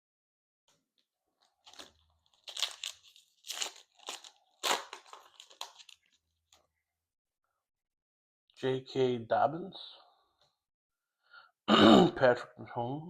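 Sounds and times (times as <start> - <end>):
foil wrapper tearing and crinkling: 1.4 - 6.2.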